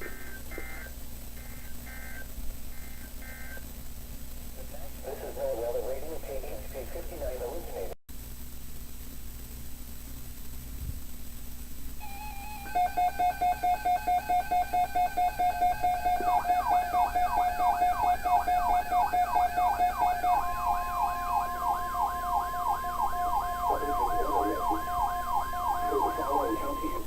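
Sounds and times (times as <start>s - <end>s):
steady alarm tone: 0.2s - 3.7s, 12.0s - 27.0s
rapid electronic beeping: 0.5s - 3.6s, 12.0s - 27.0s
sweeping siren-like tone: 12.0s - 27.0s.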